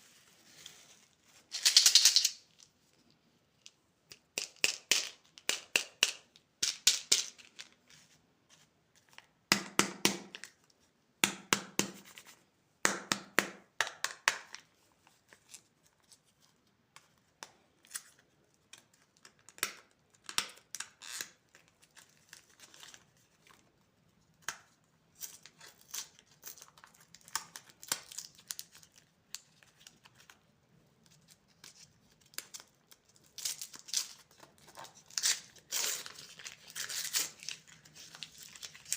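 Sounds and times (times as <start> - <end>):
plastic wrappers crinkling and tearing: 25.2 - 30.4, 31.1 - 38.9.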